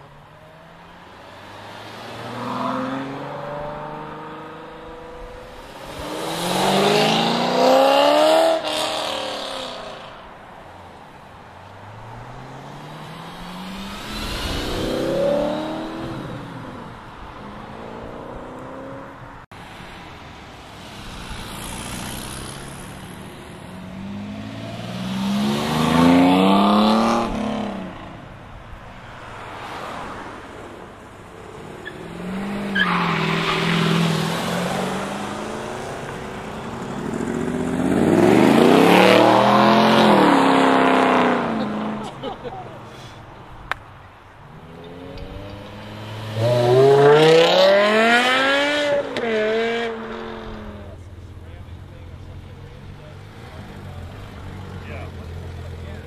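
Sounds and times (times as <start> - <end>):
sports cars accelerating past: 0.4 - 10.4, 11.6 - 19.5, 20.7 - 28.4, 29.0 - 43.0, 44.4 - 55.9.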